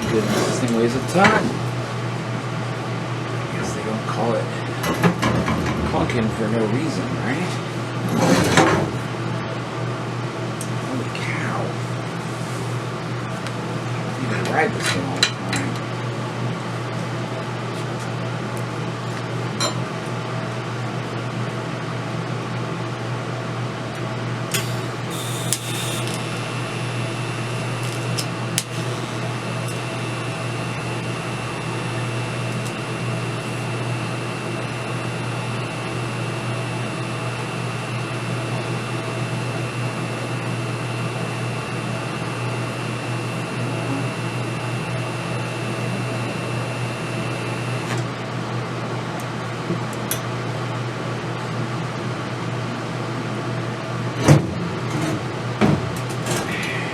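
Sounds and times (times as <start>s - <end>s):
welder electrical hum: 0.0s - 56.9s
high-pitched welding arc whine: 23.7s - 48.0s, 56.2s - 56.9s
hissing crackles: 24.6s - 33.7s.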